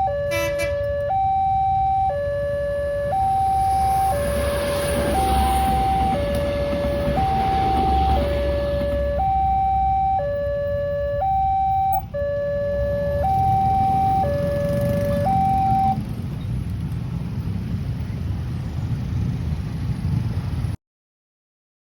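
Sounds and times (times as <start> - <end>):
level crossing two-tone alarm: 0.0 - 16.0.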